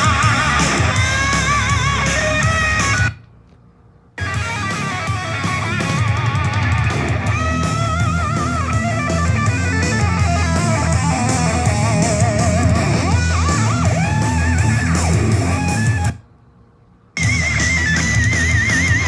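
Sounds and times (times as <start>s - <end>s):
bass and drums: 0.0s - 3.6s, 4.2s - 16.2s, 17.1s - 19.0s
electric guitar lead: 4.2s - 16.2s.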